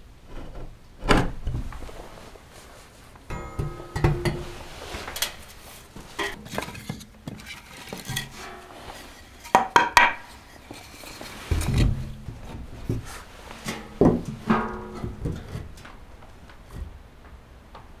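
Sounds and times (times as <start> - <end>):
ringing metal clanks: 3.3 - 10.5, 13.4 - 16.4
metal kitchenware clattering: 3.3 - 16.5
dull thumps: 11.2 - 17.0.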